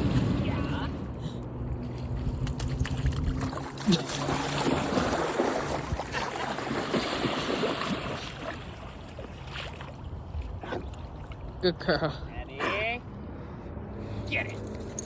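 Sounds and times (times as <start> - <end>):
dog splashing in river water: 1.8 - 11.5.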